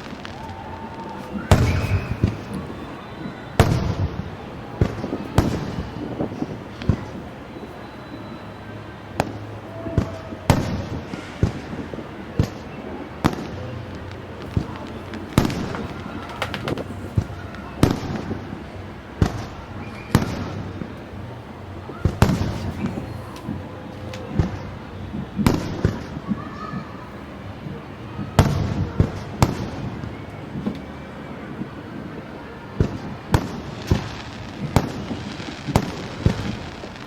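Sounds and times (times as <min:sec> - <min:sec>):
fireworks bangs: 0:00.0 - 0:37.0
rumble of distant fireworks: 0:00.0 - 0:37.0.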